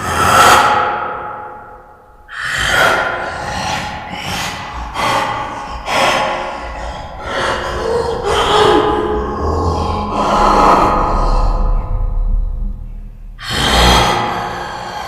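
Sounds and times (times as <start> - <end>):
person gasping and breathing heavily: 2.3 - 12.0.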